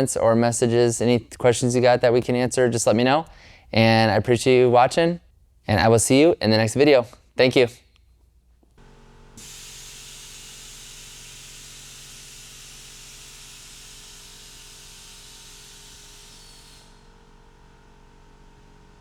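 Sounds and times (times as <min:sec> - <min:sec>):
compressed air hissing: 0:09.4 - 0:17.1.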